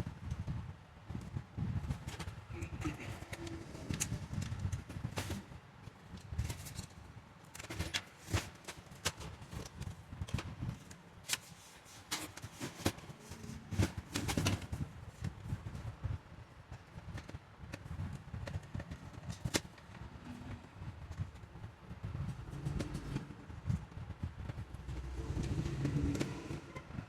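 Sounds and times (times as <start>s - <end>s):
low steady rumble: 19.0s - 27.0s.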